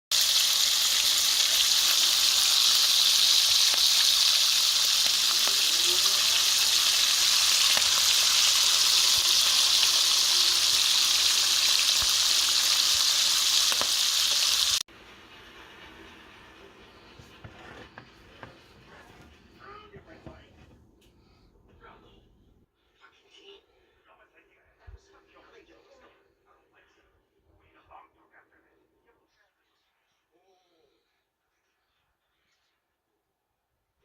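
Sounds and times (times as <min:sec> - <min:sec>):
bacon sizzling in a pan: 0:00.1 - 0:14.8.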